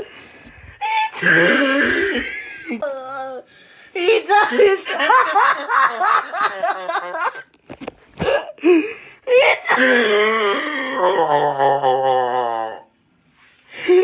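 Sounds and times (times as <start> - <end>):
person wheezing laughter: 1.0 - 2.8.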